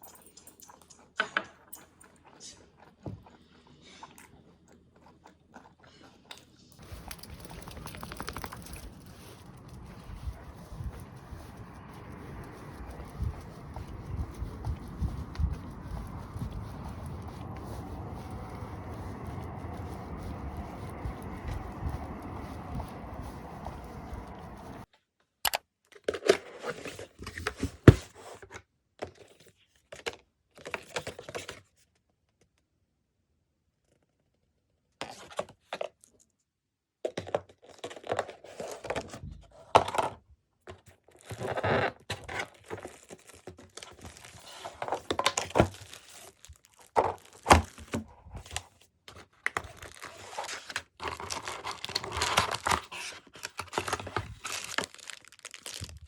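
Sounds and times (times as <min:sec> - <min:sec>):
packaging tearing and crinkling: 0:42.4 - 0:48.0, 0:49.4 - 0:56.0.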